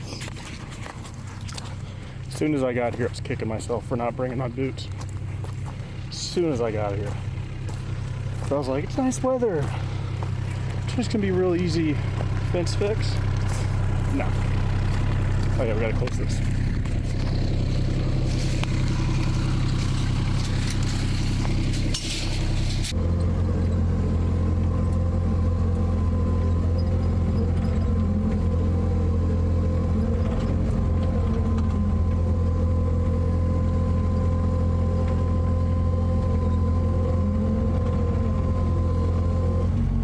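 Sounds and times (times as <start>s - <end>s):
engine humming: 0.0s - 40.0s.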